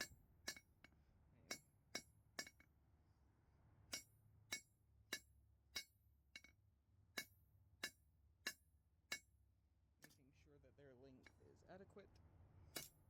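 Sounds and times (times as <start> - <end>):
hammer striking steel on anvil: 1.5 - 2.7, 3.9 - 6.5, 12.8 - 13.0.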